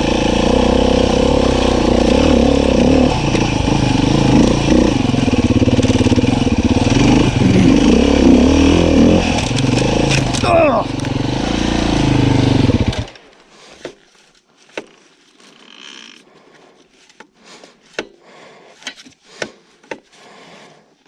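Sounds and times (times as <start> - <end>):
dirt bike engine running: 0.0 - 13.2.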